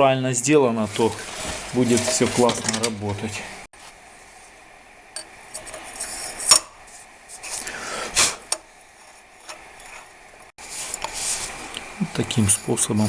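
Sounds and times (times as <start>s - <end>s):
metal scraping rub: 0.8s - 2.9s, 5.5s - 11.6s.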